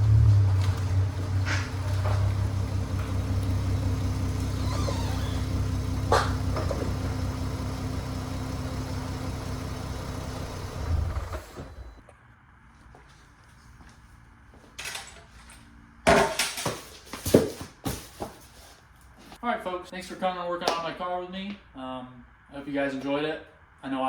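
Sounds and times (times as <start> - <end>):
car engine humming: 0.0 - 12.0.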